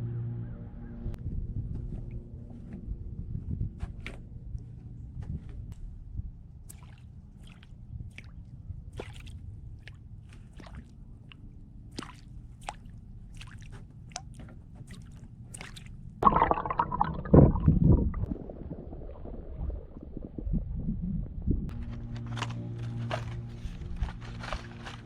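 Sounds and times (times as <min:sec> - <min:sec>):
water splashing and gurgling: 0:06.7 - 0:21.7
low underwater rumble: 0:16.2 - 0:24.9.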